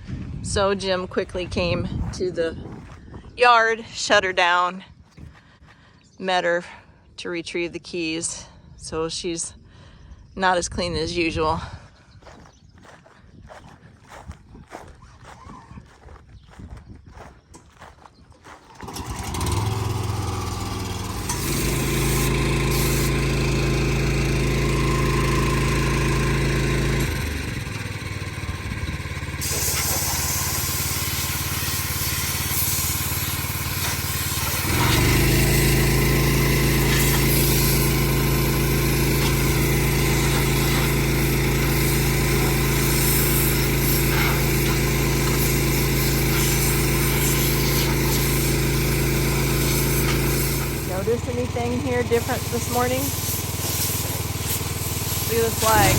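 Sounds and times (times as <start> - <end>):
large engine running: 18.4 - 55.9.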